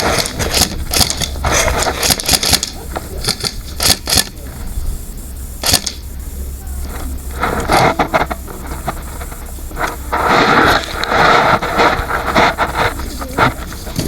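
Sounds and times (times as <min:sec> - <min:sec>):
sharp clicks and knocks: 0:00.0 - 0:04.4, 0:05.6 - 0:06.1.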